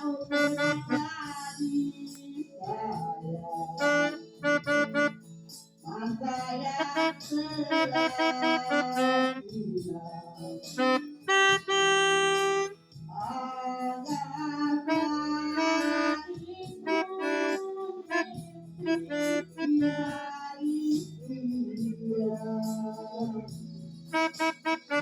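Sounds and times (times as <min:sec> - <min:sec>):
melodica playing a melody: 0:00.0 - 0:01.6, 0:03.8 - 0:05.3, 0:06.6 - 0:09.6, 0:10.7 - 0:12.8, 0:14.9 - 0:20.2, 0:24.1 - 0:25.0.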